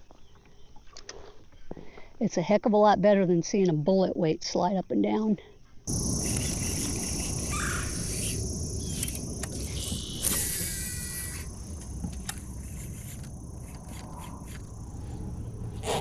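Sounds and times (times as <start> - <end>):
brief chirping call: 5.9 - 15.0
insects droning: 5.9 - 16.0
low rumble: 5.9 - 16.0.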